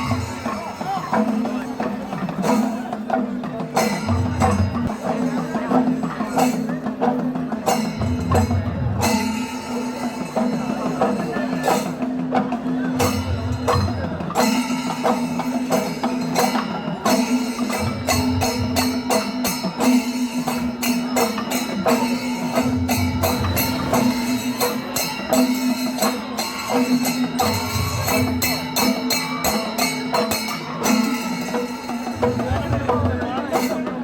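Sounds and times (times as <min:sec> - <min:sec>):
drum beats: 0:00.0 - 0:34.0
metallic hand cymbals: 0:00.0 - 0:34.0.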